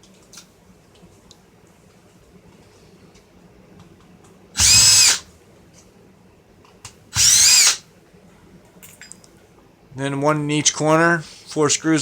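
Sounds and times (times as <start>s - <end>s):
power driver whining: 4.6s - 5.2s, 7.2s - 7.8s.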